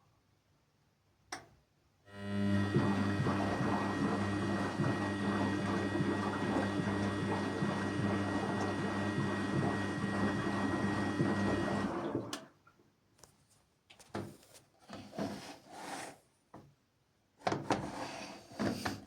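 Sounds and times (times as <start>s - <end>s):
washing machine motor hum: 2.1s - 12.5s.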